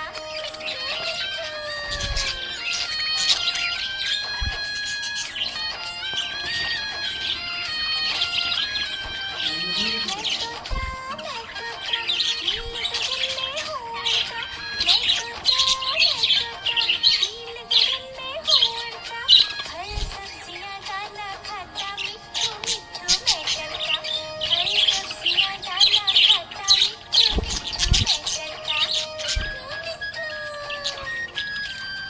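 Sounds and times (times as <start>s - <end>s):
background music with held notes: 0.0s - 32.0s
budgerigar chirping: 0.0s - 32.0s
budgerigar chirps: 21.7s - 32.0s.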